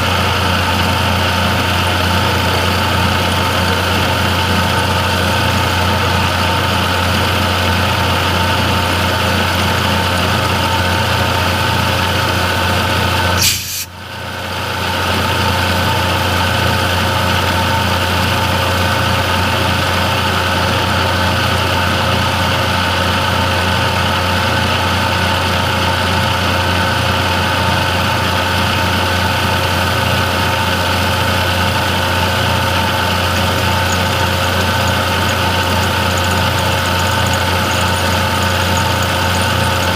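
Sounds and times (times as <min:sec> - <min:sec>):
machine motor humming: 0:27.0 - 0:39.9.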